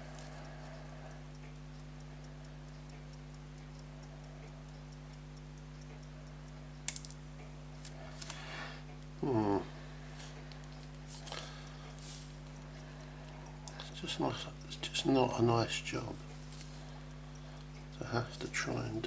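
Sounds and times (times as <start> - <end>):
pocket watch ticking: 0.0 - 19.0
sharp click: 6.8 - 7.2.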